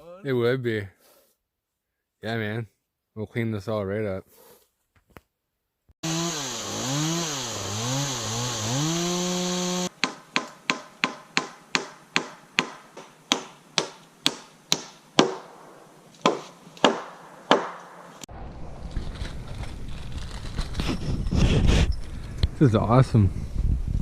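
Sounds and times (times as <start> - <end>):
chainsaw engine revving: 6.0 - 9.9.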